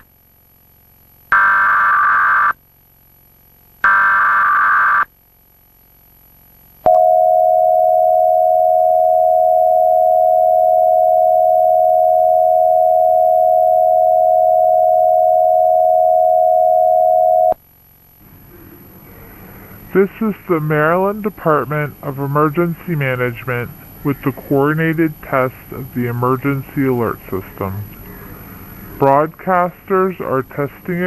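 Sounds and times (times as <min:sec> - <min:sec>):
steady dual tone alert signal: 0:06.8 - 0:17.6.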